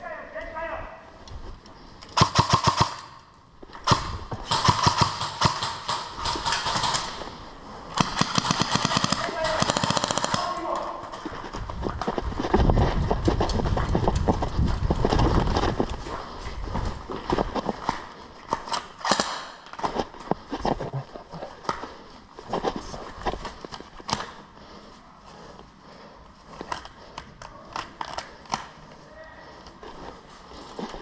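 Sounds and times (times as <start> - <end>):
rustling: 3.6 - 31.0
quick footsteps on ground: 10.6 - 18.7.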